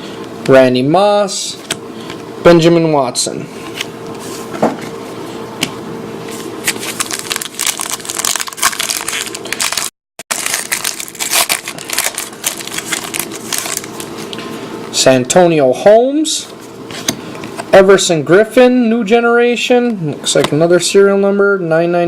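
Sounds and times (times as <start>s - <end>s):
cards being handled: 6.3s - 14.5s
foil wrapper crackling: 6.6s - 14.3s.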